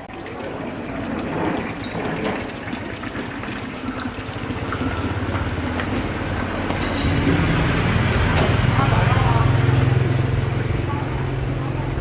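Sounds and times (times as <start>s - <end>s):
street noise rush: 3.8s - 12.0s
vehicle engine hum: 4.2s - 12.0s.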